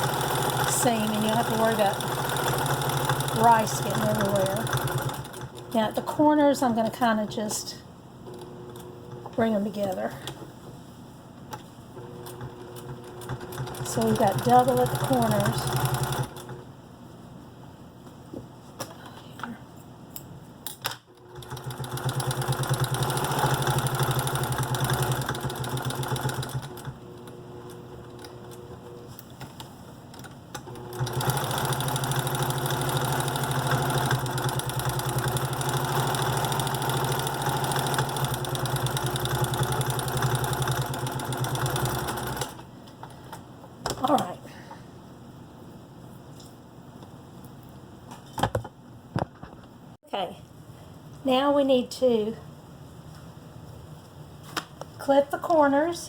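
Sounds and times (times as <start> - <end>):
sewing machine stitching: 0.0 - 5.9, 12.0 - 16.6, 21.2 - 28.8, 30.2 - 42.6.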